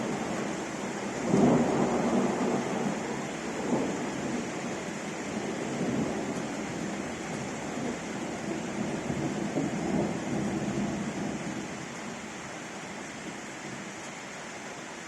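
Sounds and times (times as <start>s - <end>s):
thunder rumbling: 0.0s - 11.7s
steady rain: 0.0s - 15.0s.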